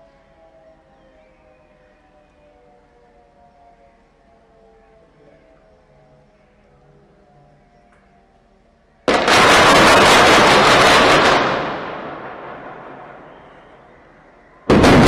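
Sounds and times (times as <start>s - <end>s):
building demolition explosion: 9.1s - 13.8s, 14.7s - 15.0s.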